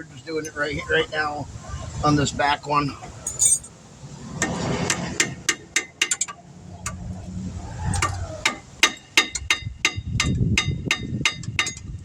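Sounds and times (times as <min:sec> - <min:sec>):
metal tools clicking and clinking: 0:03.3 - 0:03.7.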